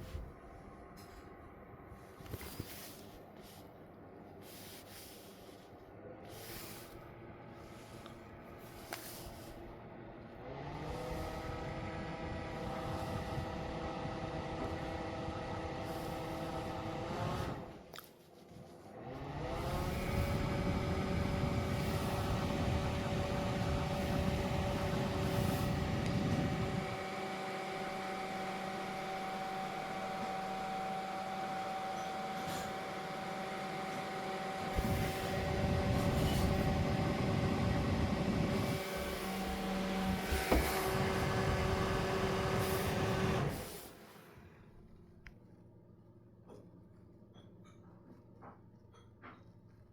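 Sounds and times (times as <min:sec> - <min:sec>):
electric fan motor whine and hum: 0:00.0 - 0:47.2
rushing air: 0:19.6 - 0:27.0, 0:34.7 - 0:43.8.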